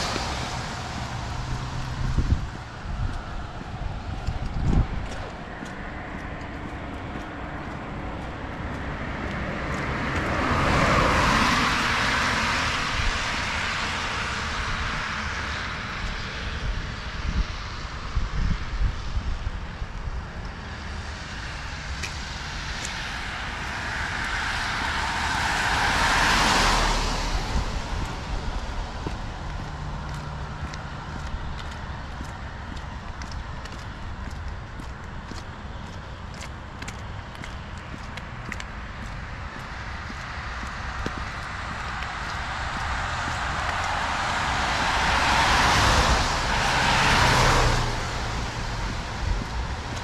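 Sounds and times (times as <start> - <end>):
tyres hissing on wet road: 0.0 - 4.1, 9.0 - 18.1, 20.7 - 32.4, 38.3 - 50.0
steady low rumble: 0.0 - 11.8, 26.8 - 50.0.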